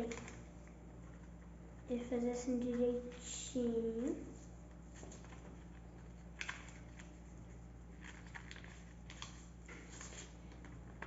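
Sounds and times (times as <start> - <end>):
paper rustling and crinkling: 4.4 - 11.0.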